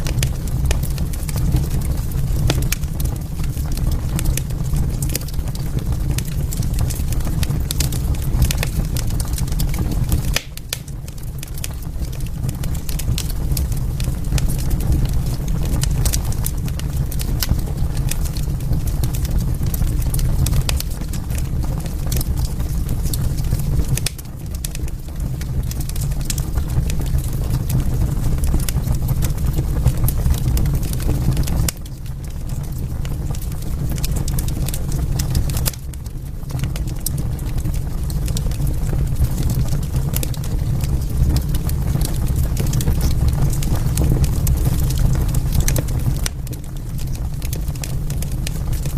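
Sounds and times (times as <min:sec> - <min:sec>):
fire flames rumbling: 0:00.0 - 0:48.9
wood fire pops and snaps: 0:00.0 - 0:48.9.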